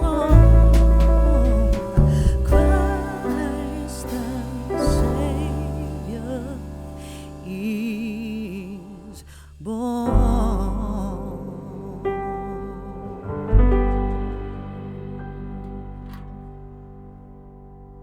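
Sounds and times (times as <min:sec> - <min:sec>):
melody with heavy vibrato: 0:00.0 - 0:07.8
deep sustained bass notes: 0:00.0 - 0:18.0.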